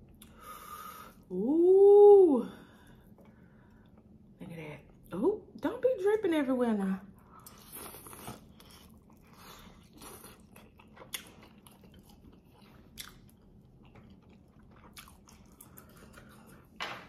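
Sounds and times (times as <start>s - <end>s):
wet chewing: 7.3s - 16.8s.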